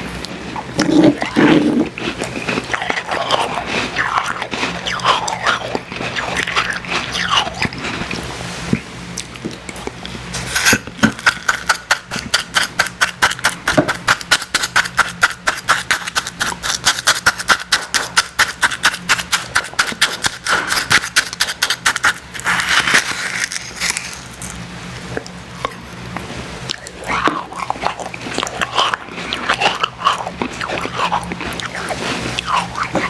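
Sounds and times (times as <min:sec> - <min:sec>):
icy slush crunching: 0:00.2 - 0:08.7, 0:18.7 - 0:24.6, 0:26.7 - 0:33.0.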